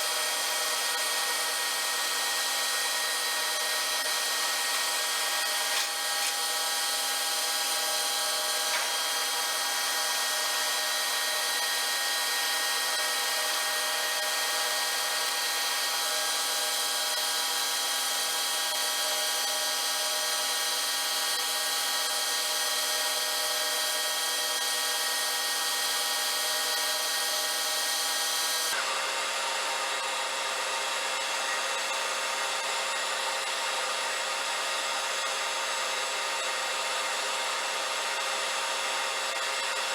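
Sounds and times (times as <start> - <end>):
machine tool whining: 0.0 - 17.4.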